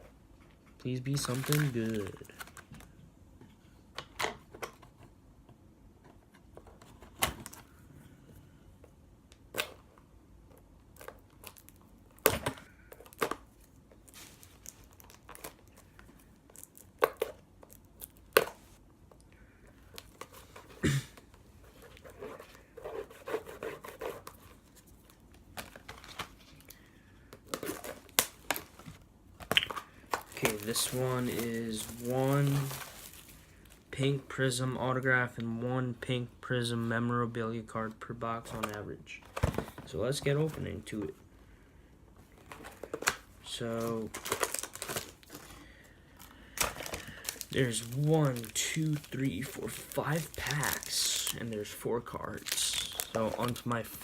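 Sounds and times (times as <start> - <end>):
wrapper and cardboard tearing: 1.1 - 2.6, 29.5 - 33.4, 42.9 - 45.5, 46.6 - 54.0.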